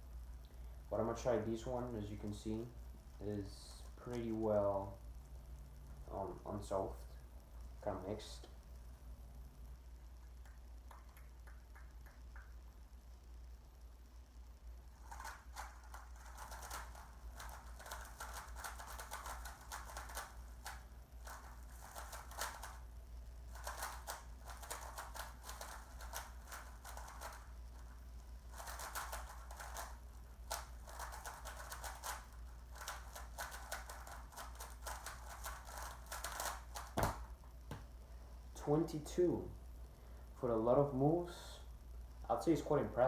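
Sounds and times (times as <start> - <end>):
steady low hum: 0.0 - 43.0
puzzle cube plastic clicking: 15.1 - 22.8, 23.5 - 27.9, 28.5 - 37.3.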